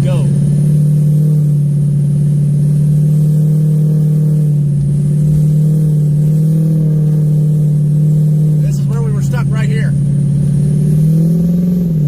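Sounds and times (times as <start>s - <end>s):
diesel truck engine under load: 0.0s - 12.0s.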